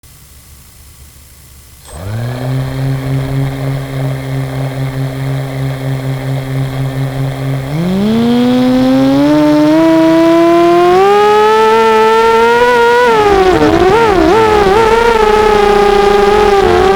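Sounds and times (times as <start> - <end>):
quadcopter motors humming: 1.2 - 16.9.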